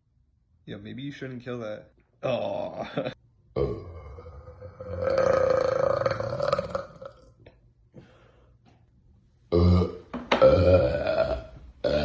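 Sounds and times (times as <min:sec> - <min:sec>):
loud burps: 0:02.2 - 0:07.6, 0:09.5 - 0:12.0.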